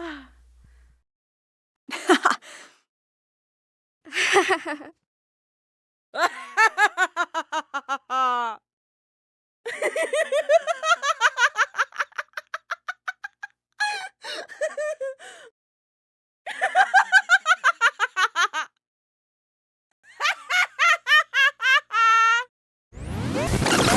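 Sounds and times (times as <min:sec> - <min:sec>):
woman laughing: 0:01.9 - 0:02.4, 0:04.1 - 0:04.9, 0:06.2 - 0:08.6, 0:09.7 - 0:15.5, 0:16.5 - 0:18.7, 0:20.1 - 0:22.5.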